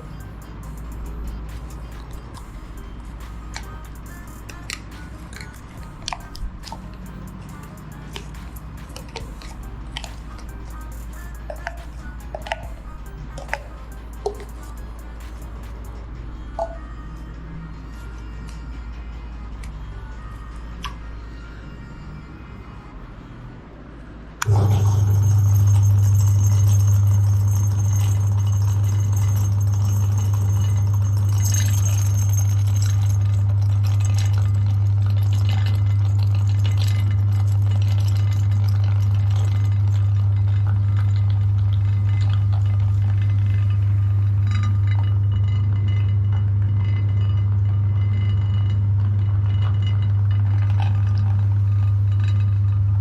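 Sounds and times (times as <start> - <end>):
meat grinder motor hum: 24.4 - 53.0
light clinking and rattling: 24.5 - 41.2.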